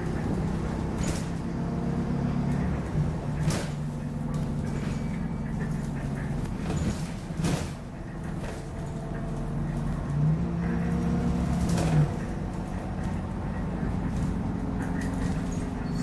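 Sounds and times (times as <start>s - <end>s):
bus engine drone: 0.0s - 16.0s.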